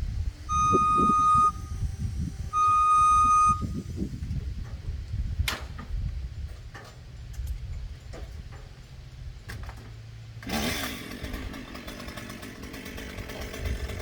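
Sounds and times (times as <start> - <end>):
high-pitched toots: 0.5 - 3.9.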